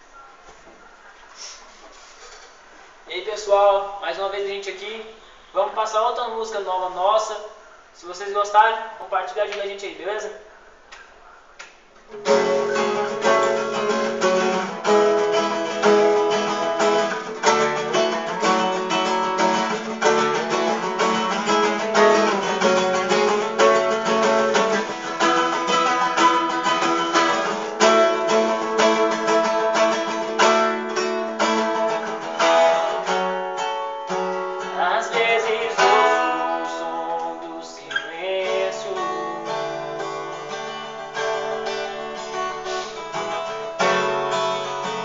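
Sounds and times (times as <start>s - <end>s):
acoustic guitar strumming chords: 12.1s - 45.0s.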